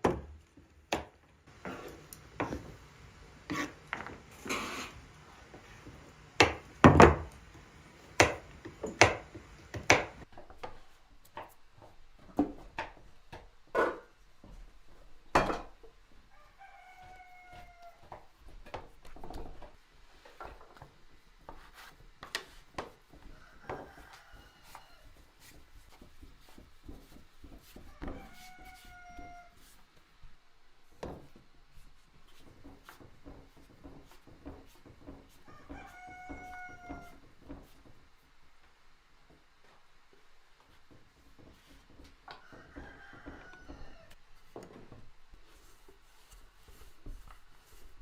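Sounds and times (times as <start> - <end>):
knife chopping on wooden board: 6.4 - 7.4, 8.1 - 10.2.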